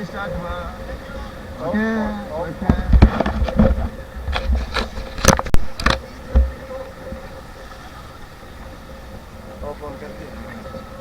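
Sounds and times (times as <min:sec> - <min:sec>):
faint constant hum: 0:00.0 - 0:11.0
camera knocks and thumps: 0:02.6 - 0:06.6.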